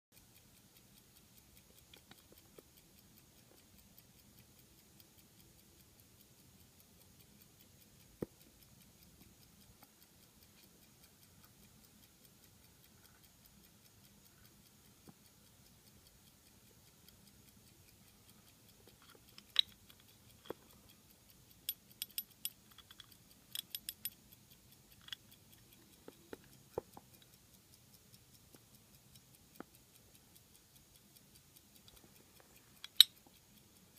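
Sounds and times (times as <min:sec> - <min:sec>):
pocket watch ticking: 0:00.1 - 0:33.9
sharp clicks and taps: 0:00.2 - 0:33.9.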